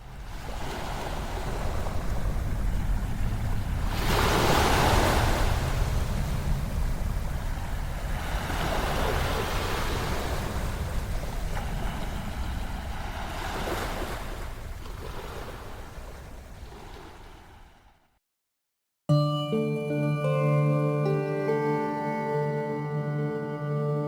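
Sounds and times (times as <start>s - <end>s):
ocean waves washing in: 0.0s - 18.0s.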